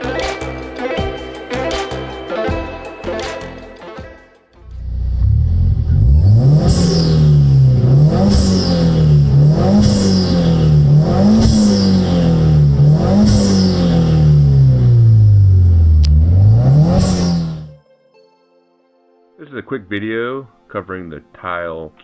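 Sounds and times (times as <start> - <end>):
car engine revving: 4.6 - 17.8
valve venting whoosh: 4.7 - 17.8.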